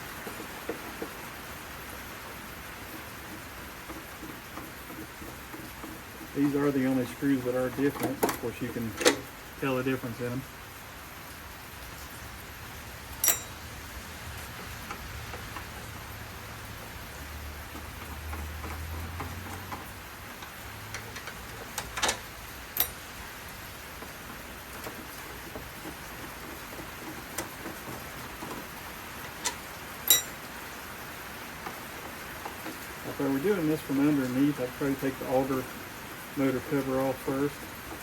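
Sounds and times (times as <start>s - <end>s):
steady hiss: 0.0s - 17.4s, 19.8s - 38.0s
small metal screws clicking: 13.2s - 13.7s, 17.7s - 23.2s, 29.3s - 30.4s.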